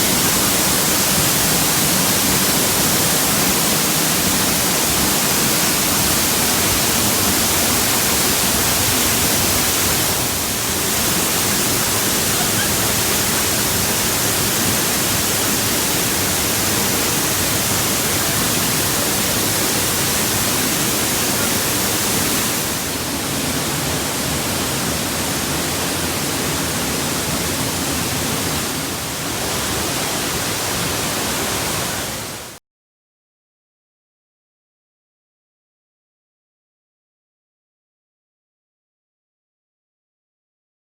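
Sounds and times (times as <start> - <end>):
waterfall roaring: 0.0 - 32.6.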